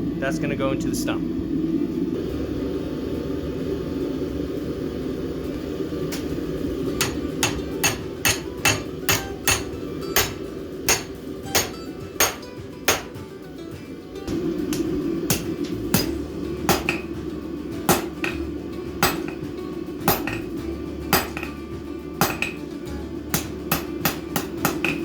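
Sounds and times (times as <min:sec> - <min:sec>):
steady low rumble: 0:00.0 - 0:25.0
hammer striking steel bar: 0:07.0 - 0:13.2, 0:14.3 - 0:17.2, 0:17.9 - 0:19.4, 0:20.0 - 0:21.6, 0:22.2 - 0:22.6, 0:23.3 - 0:25.0.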